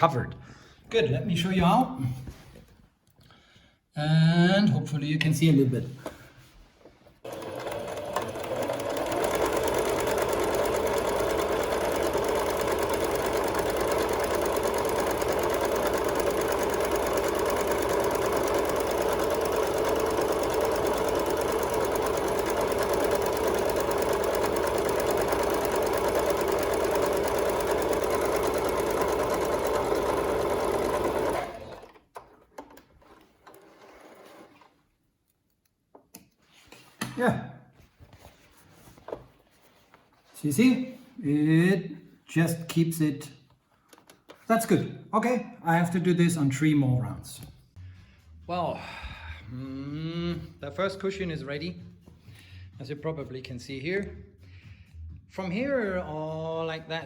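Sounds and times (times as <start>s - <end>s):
sewing machine stitching: 7.2s - 34.8s
faint handling sounds: 33.0s - 37.0s, 37.7s - 41.2s.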